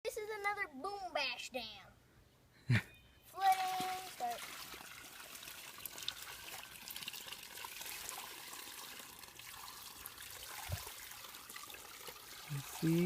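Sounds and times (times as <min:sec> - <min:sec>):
water drips and splashes: 0:03.4 - 0:13.0
water trickling and pouring: 0:03.4 - 0:13.0.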